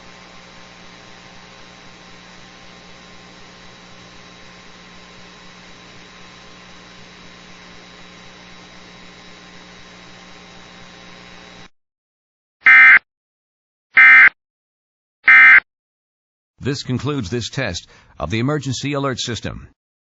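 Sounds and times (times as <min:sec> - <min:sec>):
mains hum: 0:00.0 - 0:11.7.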